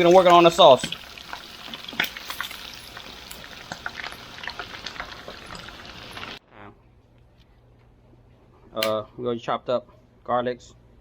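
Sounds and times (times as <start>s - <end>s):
fish frying in hot oil: 0.0s - 6.4s.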